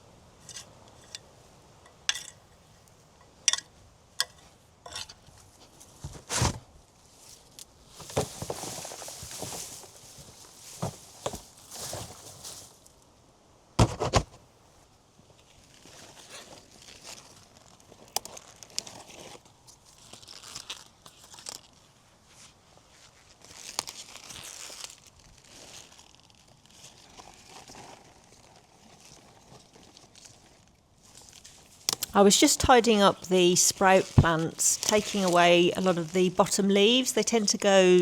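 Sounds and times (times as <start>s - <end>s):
leaves rustling and tearing: 7.0s - 13.0s, 15.4s - 38.0s
footsteps: 32.0s - 38.0s.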